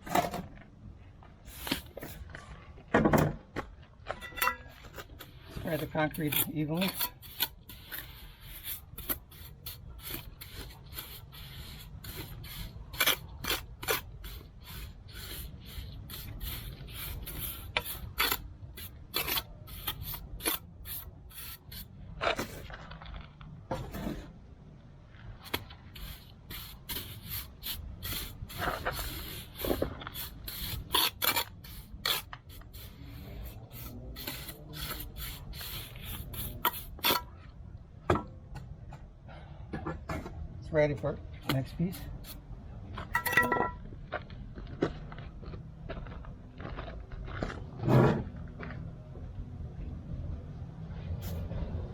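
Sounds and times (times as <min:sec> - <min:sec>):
trowel scraping wet concrete: 0:01.5 - 0:02.4, 0:04.2 - 0:22.7, 0:25.4 - 0:37.4.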